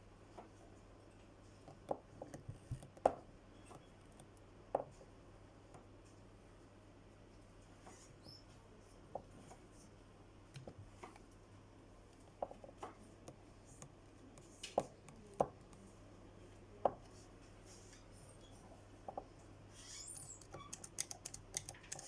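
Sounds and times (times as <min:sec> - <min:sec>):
faint low hum: 0:00.0 - 0:22.0
small tools clicking and tapping: 0:20.2 - 0:22.0.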